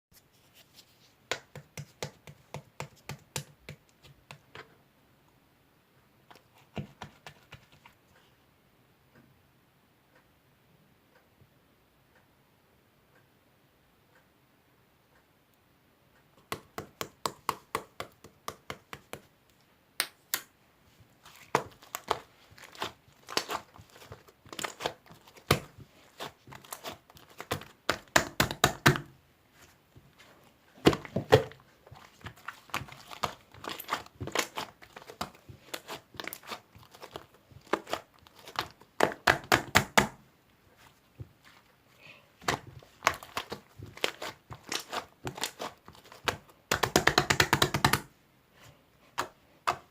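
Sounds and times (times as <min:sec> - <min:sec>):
slime squished by hand: 0:21.2 - 0:28.9.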